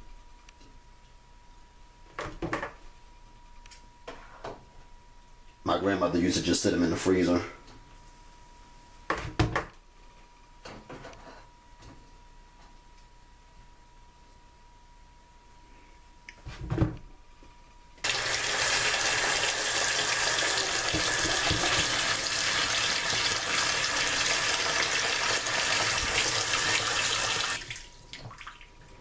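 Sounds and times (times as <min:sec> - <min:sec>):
tap water pouring into bowl: 0:18.0 - 0:28.7.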